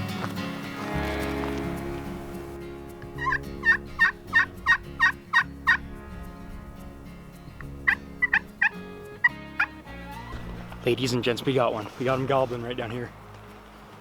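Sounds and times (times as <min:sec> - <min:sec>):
turkey gobbling: 0:03.2 - 0:05.8, 0:07.8 - 0:10.8.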